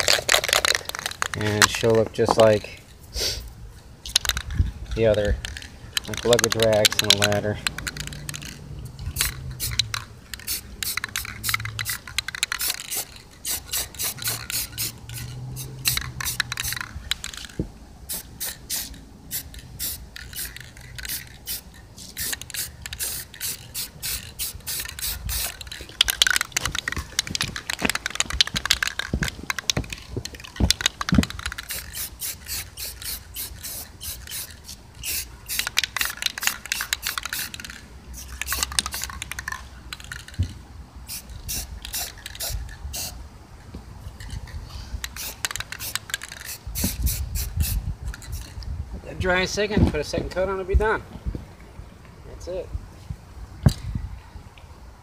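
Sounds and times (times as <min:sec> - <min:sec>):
spray paint hissing: 0:00.0 - 0:01.8, 0:03.0 - 0:43.3, 0:44.2 - 0:48.6
spray can rattling: 0:00.0 - 0:02.6, 0:04.0 - 0:43.2, 0:44.1 - 0:48.6.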